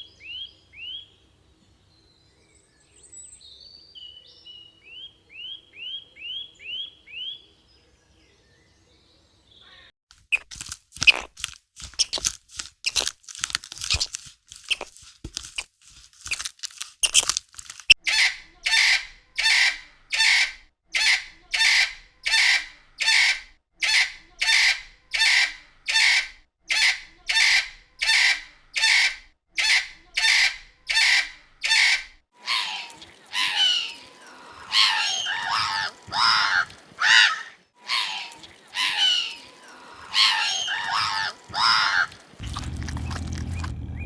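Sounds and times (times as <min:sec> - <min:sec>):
crunching chewing clicks: 0:10.1 - 0:18.0, 0:42.4 - 0:44.0
animal rasping call: 0:42.4 - 0:44.0.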